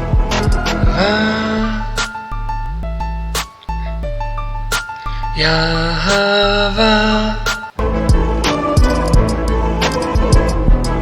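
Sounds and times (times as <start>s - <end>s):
instrumental worship music: 0.0s - 2.5s, 4.9s - 11.0s.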